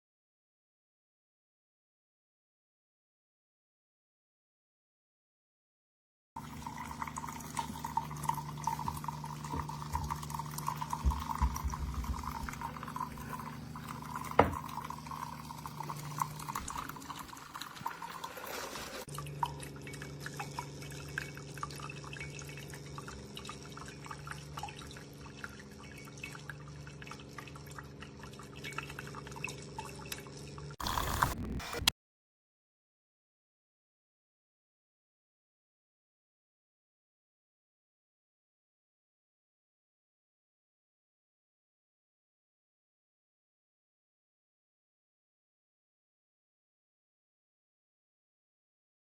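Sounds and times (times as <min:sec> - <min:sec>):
coffee dripping into a cup: 0:06.4 - 0:18.4, 0:19.0 - 0:30.8.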